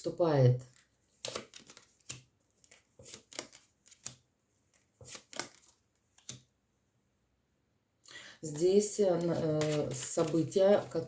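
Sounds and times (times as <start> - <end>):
cards slapping and rustling: 0.7 - 6.5, 9.2 - 11.0.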